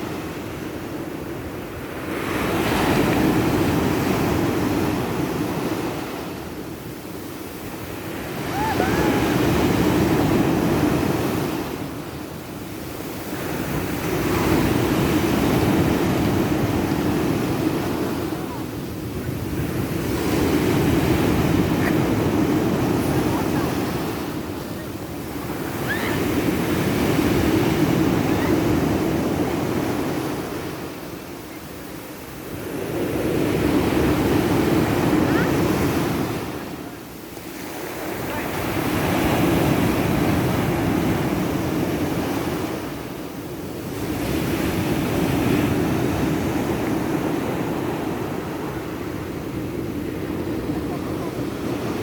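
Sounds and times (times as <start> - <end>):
wind buffeting microphone: 0.0 - 31.1
surf breaking on beach: 0.0 - 52.0.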